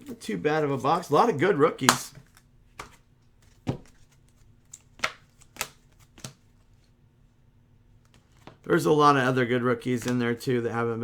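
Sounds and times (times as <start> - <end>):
cards tapping on a table: 3.6 - 4.1.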